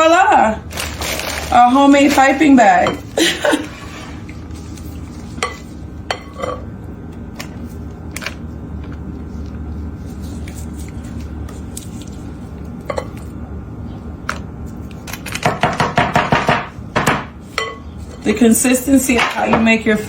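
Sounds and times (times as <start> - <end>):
steady low hum: 0.0 - 20.0
utensils clinking against dishes: 2.1 - 3.8, 5.3 - 6.7, 12.8 - 13.3, 17.5 - 19.8.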